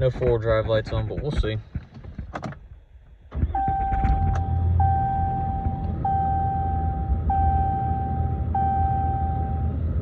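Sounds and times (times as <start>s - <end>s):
dashboard warning chime: 3.6s - 9.7s.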